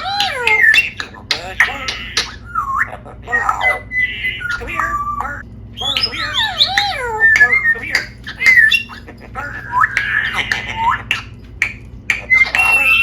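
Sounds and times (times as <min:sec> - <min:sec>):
parrot squawking and whistling: 0:00.0 - 0:13.0
parrot clicks: 0:09.8 - 0:13.0.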